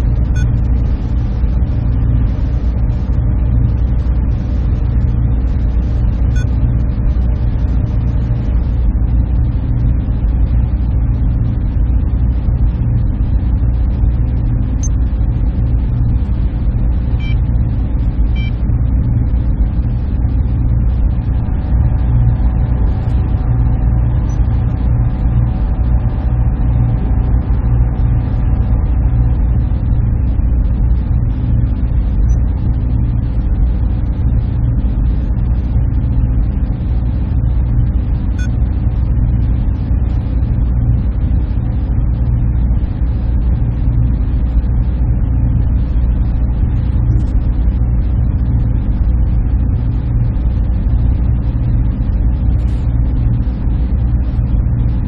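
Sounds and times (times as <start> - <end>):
server cooling fans droning: 0.0 - 55.0
faint steady tones: 17.1 - 17.7.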